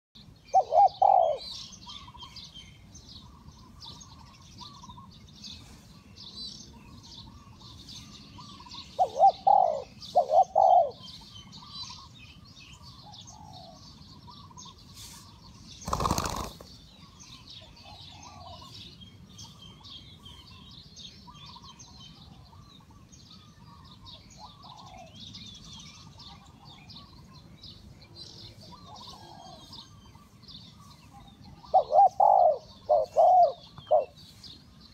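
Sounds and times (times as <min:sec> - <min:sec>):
small birds chirping: 0:00.2 - 0:34.9
dove cooing: 0:00.5 - 0:02.3, 0:08.4 - 0:12.1, 0:12.8 - 0:14.7, 0:15.9 - 0:16.7, 0:17.8 - 0:18.8, 0:23.7 - 0:25.2, 0:28.6 - 0:30.2, 0:31.1 - 0:34.2.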